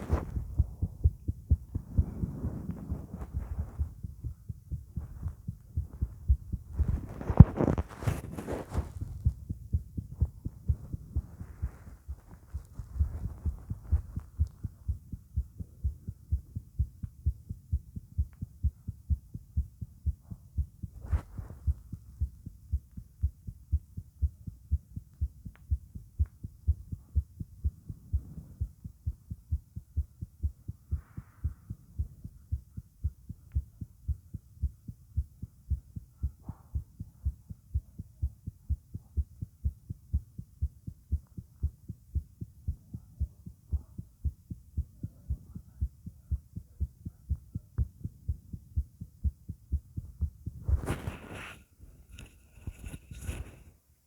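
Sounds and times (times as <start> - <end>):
faint rustles: 0.0 - 14.9, 21.0 - 22.0, 50.4 - 53.8
heartbeat thumps: 0.0 - 53.6.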